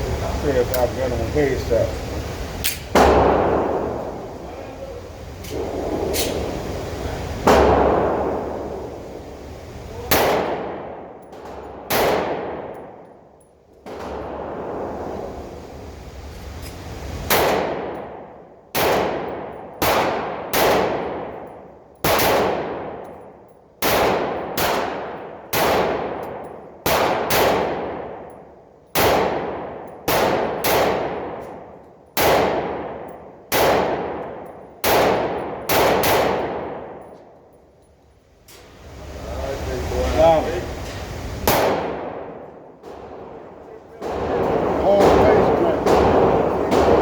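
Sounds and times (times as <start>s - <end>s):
pistol gunshots echoing: 2.6s - 4.8s, 5.5s - 9.2s, 10.0s - 13.0s, 13.8s - 14.8s, 17.3s - 23.1s, 23.8s - 28.3s, 29.0s - 37.2s, 41.4s - 47.0s.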